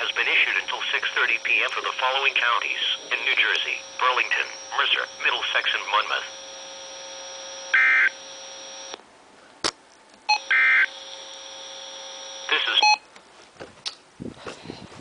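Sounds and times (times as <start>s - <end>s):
buzzy digital data bursts: 0.0s - 8.9s
steady hum: 0.0s - 15.0s.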